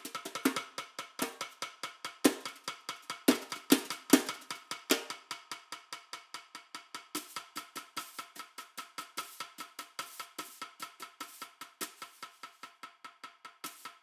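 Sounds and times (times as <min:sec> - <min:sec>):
snare drum strokes: 0:07.2 - 0:12.7.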